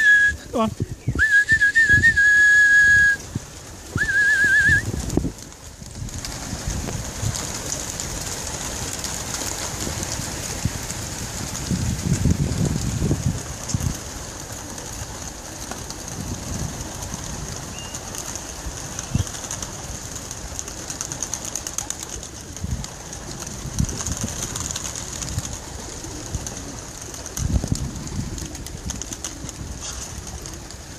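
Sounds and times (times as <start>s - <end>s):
pigeons cooing: 24.4s - 30.9s.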